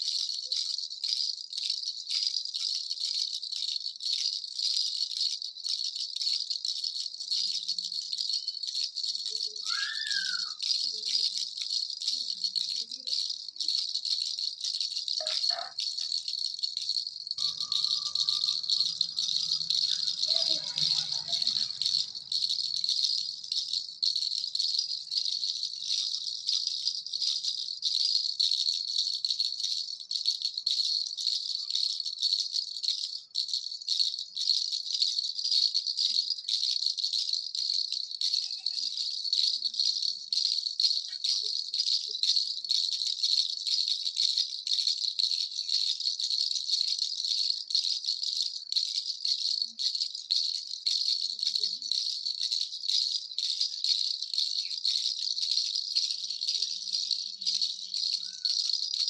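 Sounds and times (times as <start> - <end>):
baby rattle bells jingling: 0.0 - 59.0.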